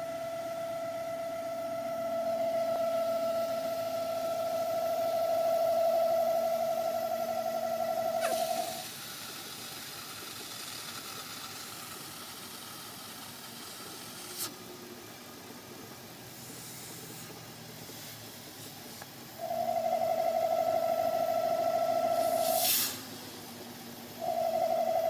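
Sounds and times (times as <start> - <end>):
engine vacuum leak whistle: 0.0 - 9.3, 19.3 - 23.2.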